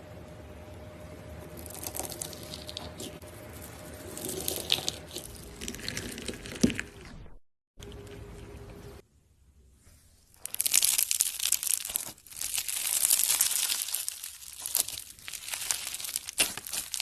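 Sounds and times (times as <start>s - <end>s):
slime crackling and popping: 1.6s - 3.2s, 4.0s - 6.9s, 10.4s - 17.0s.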